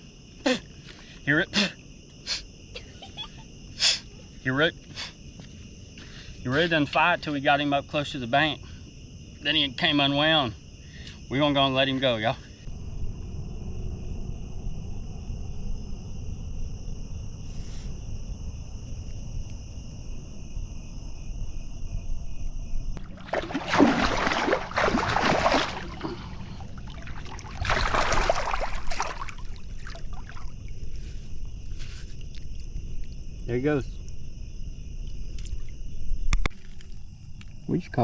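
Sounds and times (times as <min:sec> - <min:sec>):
crickets chirping: 0:00.0 - 0:38.0
low rumble: 0:12.7 - 0:23.0.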